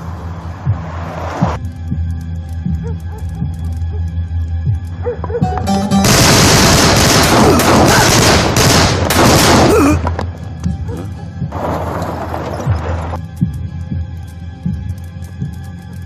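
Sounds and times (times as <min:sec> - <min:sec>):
low droning music: 0:00.0 - 0:16.0
heavy gunfire: 0:06.0 - 0:10.1.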